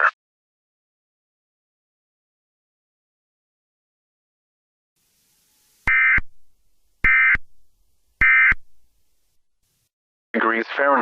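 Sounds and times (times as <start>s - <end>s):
digital data tone bursts: 5.3s - 8.9s.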